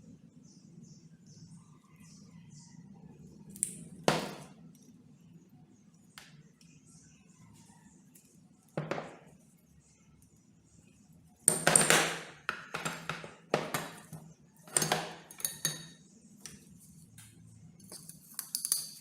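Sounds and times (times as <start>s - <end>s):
metal tools clinking and knocking: 11.5s - 16.0s, 17.8s - 19.0s.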